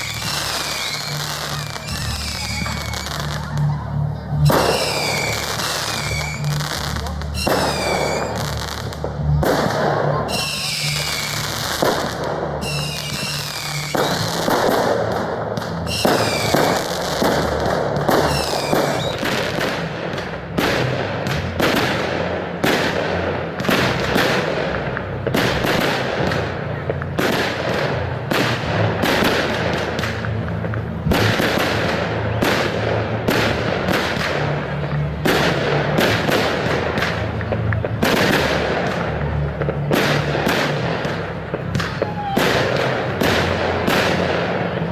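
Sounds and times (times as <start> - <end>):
fireworks bangs and crackling: 0.0 - 44.9
high falling whistles: 0.7 - 3.1.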